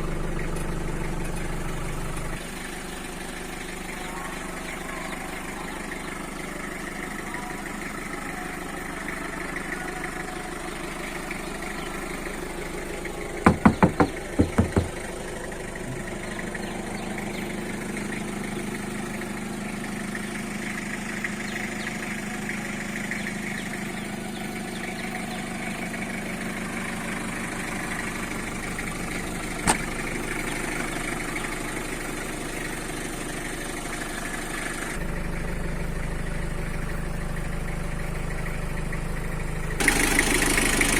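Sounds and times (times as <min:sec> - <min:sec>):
minibus engine idling: 0:00.0 - 0:40.9
sharp knocks: 0:13.5 - 0:15.1, 0:29.7 - 0:29.9.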